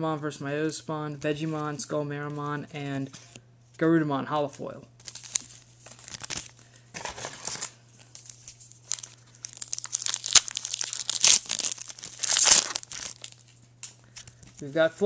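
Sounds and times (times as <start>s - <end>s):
foil wrapper crinkling and tearing: 5.0s - 13.6s.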